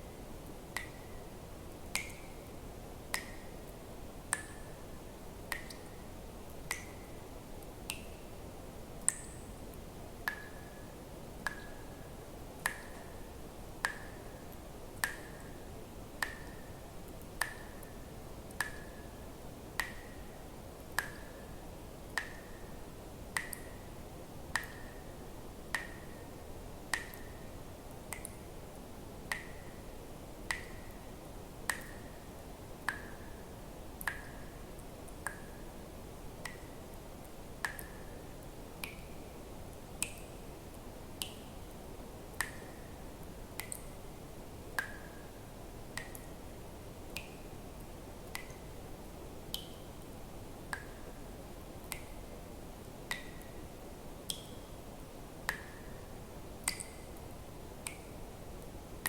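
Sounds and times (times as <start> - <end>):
faint steady hiss: 0.0 - 59.0
water drops falling into water: 0.7 - 1.2, 1.9 - 4.8, 5.5 - 8.2, 9.0 - 10.7, 11.4 - 11.9, 12.6 - 13.2, 13.8 - 15.6, 16.2 - 19.1, 19.8 - 20.2, 20.9 - 21.4, 22.1 - 22.7, 23.3 - 23.9, 24.5 - 25.0, 25.7 - 26.2, 26.9 - 27.4, 28.1 - 28.5, 29.3 - 29.8, 30.4 - 31.0, 31.7 - 32.2, 32.8 - 33.3, 34.0 - 34.5, 36.4 - 37.0, 37.6 - 38.2, 38.8 - 39.2, 40.0 - 40.3, 42.3 - 42.8, 43.6 - 43.9, 44.8 - 45.3, 46.0 - 46.4, 47.1 - 47.4, 48.2 - 48.7, 49.5 - 49.8, 51.8 - 52.1, 53.1 - 53.5, 54.2 - 54.7, 55.5 - 55.8, 56.6 - 57.1, 57.8 - 58.1.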